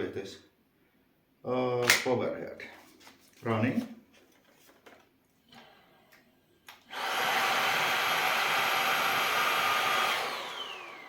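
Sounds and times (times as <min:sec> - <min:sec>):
stick vacuum running with whine: 0:06.9 - 0:11.0.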